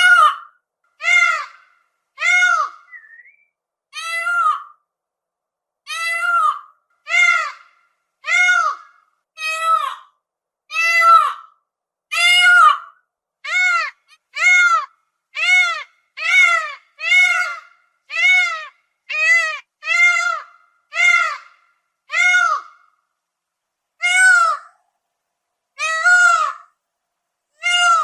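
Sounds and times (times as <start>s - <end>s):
peacock calling: 0.0s - 3.4s, 12.1s - 22.8s, 25.8s - 26.7s, 27.6s - 28.0s.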